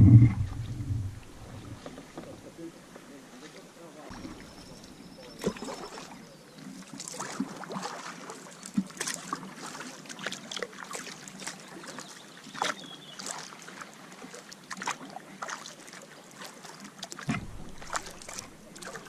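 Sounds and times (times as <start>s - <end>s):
paddle pulling through water: 0.0s - 19.0s
small splashes and drips: 4.1s - 19.0s.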